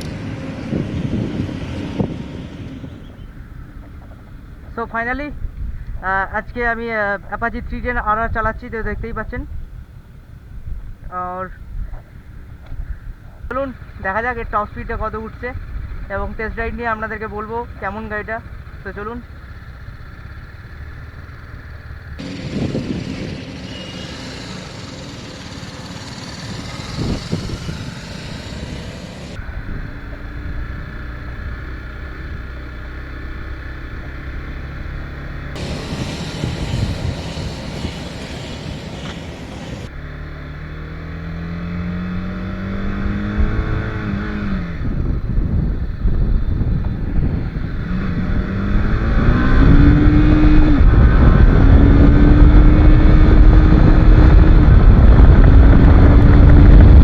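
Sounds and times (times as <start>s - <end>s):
wind rush on microphone: 0.0s - 17.0s, 22.2s - 24.7s, 25.8s - 32.6s, 35.5s - 39.9s, 42.0s - 57.0s
motorcycle engine accelerating: 0.0s - 57.0s.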